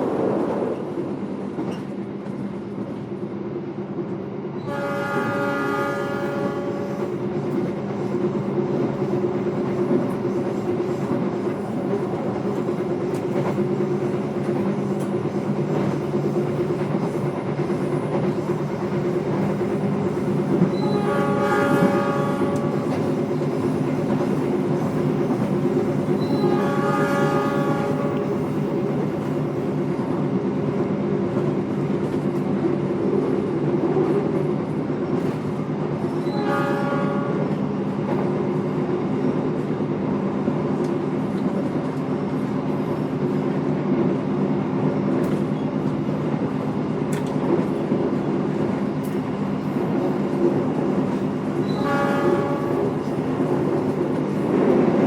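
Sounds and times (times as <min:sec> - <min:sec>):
train running rumble and hum: 0:00.0 - 0:55.0
train horn blasts: 0:04.6 - 0:07.2, 0:20.7 - 0:23.1, 0:26.2 - 0:28.4, 0:36.2 - 0:37.6, 0:51.6 - 0:53.2.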